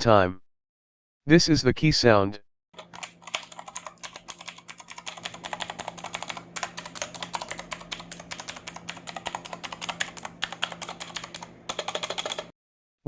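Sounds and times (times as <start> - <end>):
clicky mechanical keyboard typing: 2.8 - 12.5.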